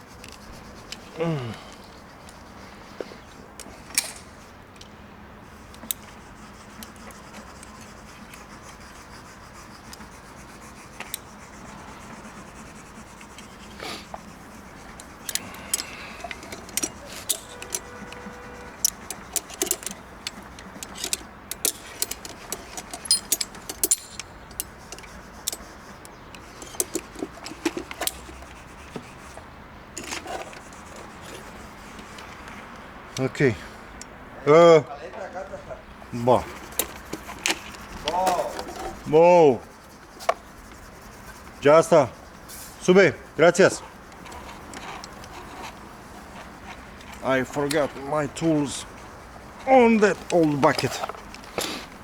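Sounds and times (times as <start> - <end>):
metallic clinks of bucket and carabiner: 3.5 - 4.5, 14.9 - 28.6, 30.0 - 32.4, 36.4 - 39.1, 43.6 - 52.0.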